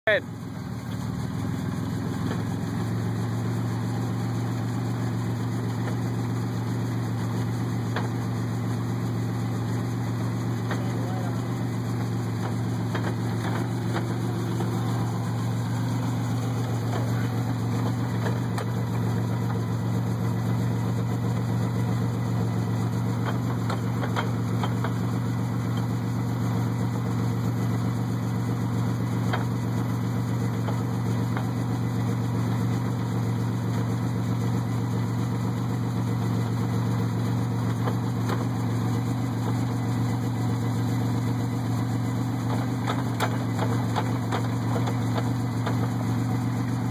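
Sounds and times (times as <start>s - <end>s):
truck engine idling: 0.0s - 46.9s.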